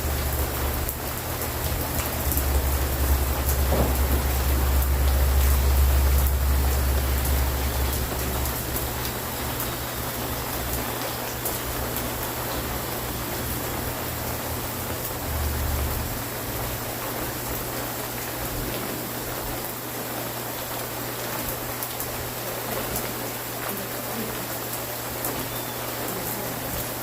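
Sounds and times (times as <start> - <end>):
constant low hum: 0.0 - 17.4
steady rain falling: 0.0 - 27.0.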